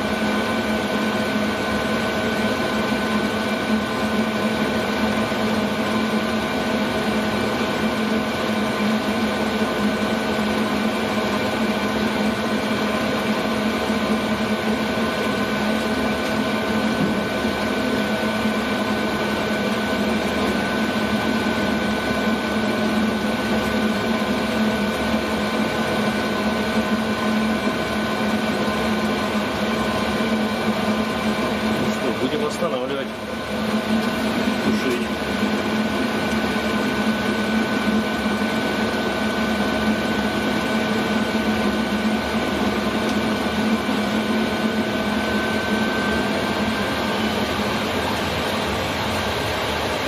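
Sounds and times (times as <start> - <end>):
air heater humming: 0.0 - 50.0
steady whine: 0.0 - 50.0.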